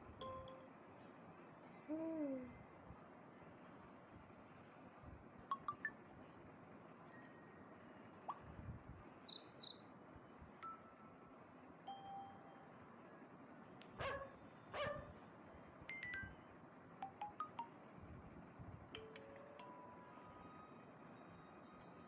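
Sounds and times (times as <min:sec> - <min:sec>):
phone notification chimes and beeps: 0:05.5 - 0:06.0, 0:17.0 - 0:17.8.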